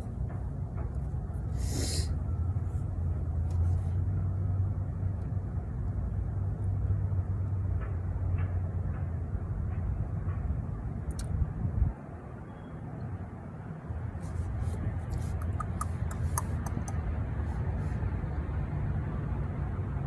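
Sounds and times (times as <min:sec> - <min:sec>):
brief hiss: 0:01.6 - 0:02.1.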